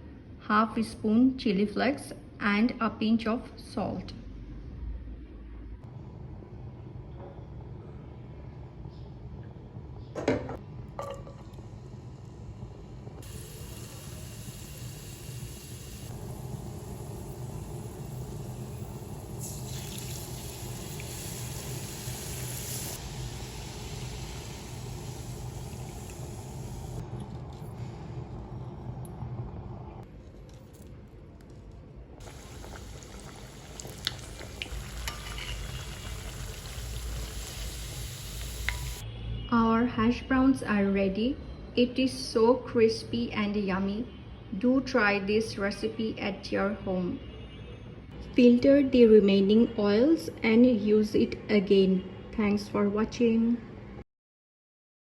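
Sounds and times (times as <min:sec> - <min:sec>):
food sizzling in hot oil: 0:12.6 - 0:27.0, 0:32.2 - 0:39.0
liquid hissing: 0:13.2 - 0:27.0, 0:32.2 - 0:39.0
oil pops and crackles: 0:32.2 - 0:37.8.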